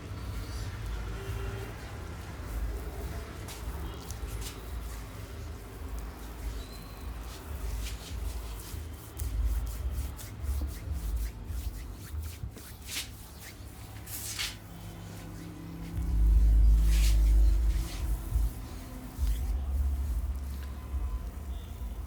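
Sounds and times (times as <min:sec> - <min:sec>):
hands rubbing skin and hair: 0:01.2 - 0:21.4
low rumble: 0:16.0 - 0:21.2.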